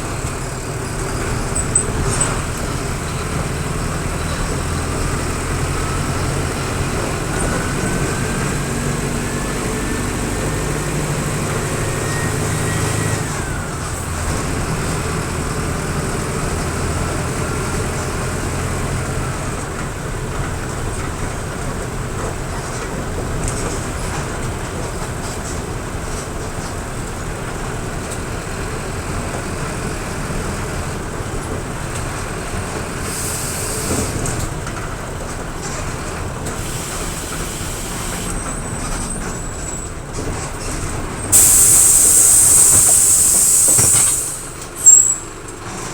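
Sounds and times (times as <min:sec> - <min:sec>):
bus diesel engine accelerating: 0:00.0 - 0:45.9
short hiss: 0:33.0 - 0:34.3, 0:41.4 - 0:45.0
rising whistle: 0:41.4 - 0:45.2.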